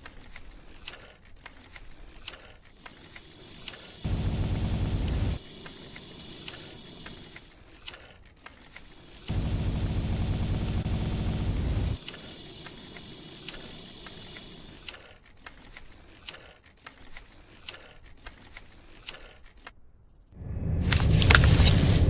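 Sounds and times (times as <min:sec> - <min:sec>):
small clicks and crackles: 0:00.0 - 0:04.1, 0:05.0 - 0:09.4, 0:11.9 - 0:19.8
hiss: 0:03.1 - 0:07.4, 0:11.5 - 0:15.0
flamethrower burst: 0:03.9 - 0:07.0, 0:09.3 - 0:12.3.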